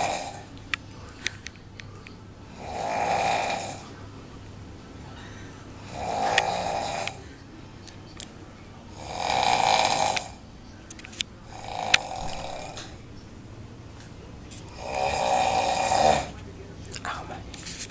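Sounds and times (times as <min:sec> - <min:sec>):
person snoring: 0:00.0 - 0:00.5, 0:02.4 - 0:04.0, 0:05.1 - 0:07.4, 0:08.9 - 0:10.4, 0:11.4 - 0:13.0, 0:14.6 - 0:17.8.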